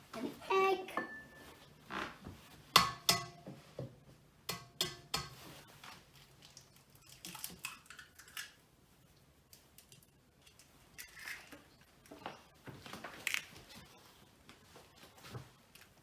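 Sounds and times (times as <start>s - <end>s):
egg tapping on mixing bowl: 4.5s - 5.4s.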